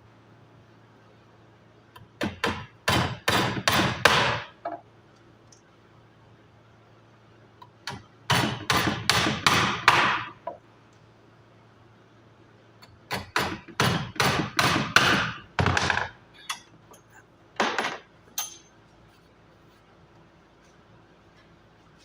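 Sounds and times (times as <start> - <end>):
hammer striking wood: 2.2 - 4.5, 7.9 - 10.4, 13.1 - 16.1.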